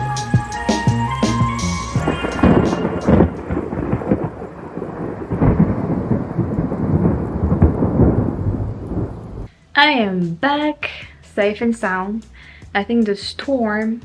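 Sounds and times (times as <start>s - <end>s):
rain: 0.0s - 9.5s
rolling thunder: 0.5s - 9.5s.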